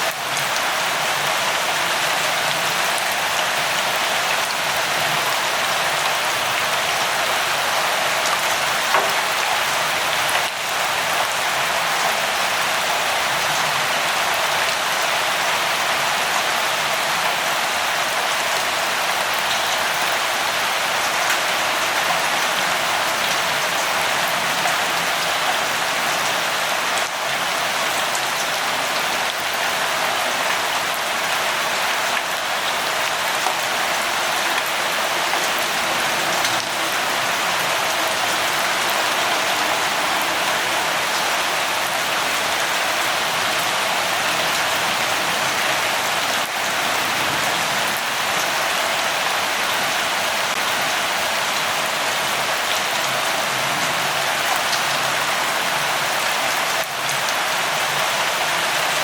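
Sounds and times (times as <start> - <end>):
light rain falling: 0.0 - 59.0.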